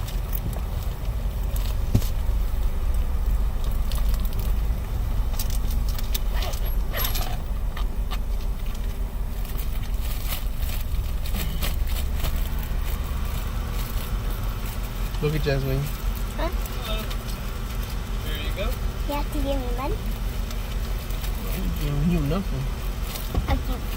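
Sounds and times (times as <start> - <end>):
small clicks and rattles: 0.0 - 18.1
car interior rumble: 0.0 - 23.9.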